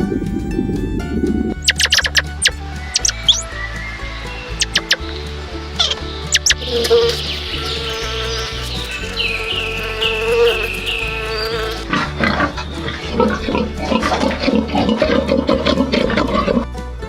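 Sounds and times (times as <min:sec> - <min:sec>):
background music with beat: 0:00.0 - 0:17.0
high falling chirps in music: 0:00.3 - 0:15.7
pigs grunting: 0:05.8 - 0:16.7.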